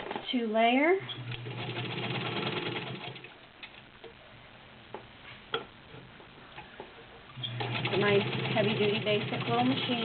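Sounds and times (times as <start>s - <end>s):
sewing machine stitching: 1.2s - 3.3s, 7.4s - 10.0s.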